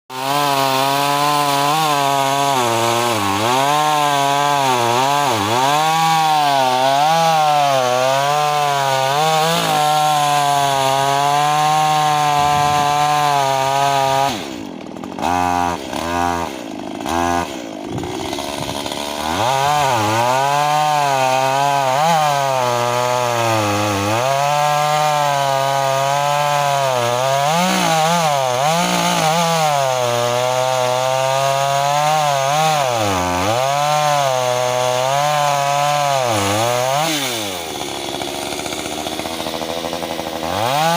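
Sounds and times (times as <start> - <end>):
chainsaw cutting wood: 0.1 - 40.9.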